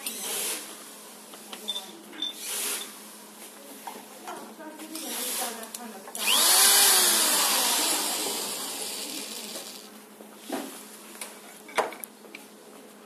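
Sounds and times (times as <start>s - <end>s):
electric blower motor whirring: 6.2s - 9.9s.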